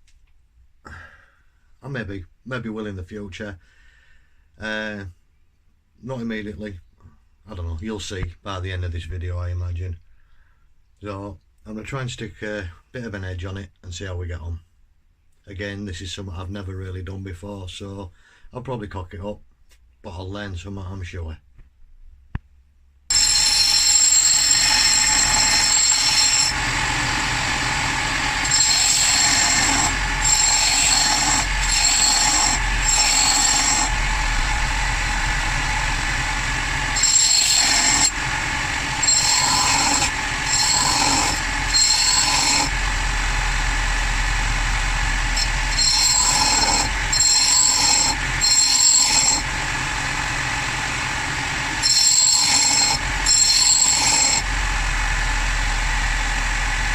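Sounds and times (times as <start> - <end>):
grinder motor running: 23.1 - 56.9
high metallic grinding screech: 23.1 - 56.9.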